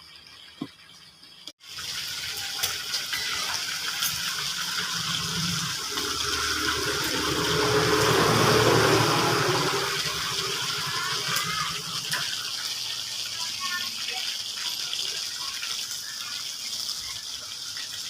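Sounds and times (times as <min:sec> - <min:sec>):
rushing gushing water: 0:01.6 - 0:18.0.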